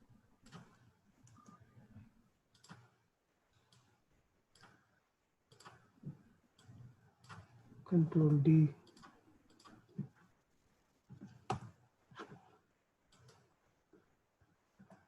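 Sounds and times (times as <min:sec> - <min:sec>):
computer mouse clicks: 0:02.5 - 0:03.0, 0:03.6 - 0:04.9, 0:05.5 - 0:05.9, 0:08.8 - 0:10.2, 0:13.1 - 0:13.5.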